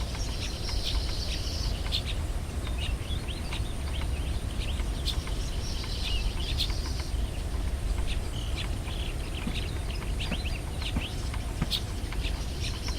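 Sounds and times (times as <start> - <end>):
low background rumble: 0.0 - 12.9
songbirds chirping: 0.0 - 12.9.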